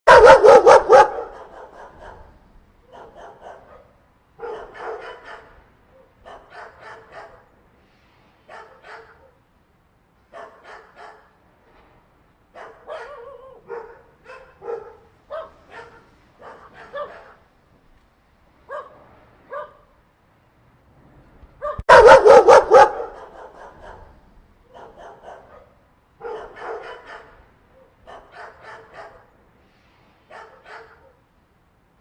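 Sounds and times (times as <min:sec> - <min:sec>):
dogs barking and yelping: 0:00.1 - 0:02.3, 0:02.9 - 0:07.5, 0:10.3 - 0:11.3, 0:12.6 - 0:17.4, 0:21.6 - 0:24.1, 0:24.7 - 0:29.3, 0:30.3 - 0:31.2.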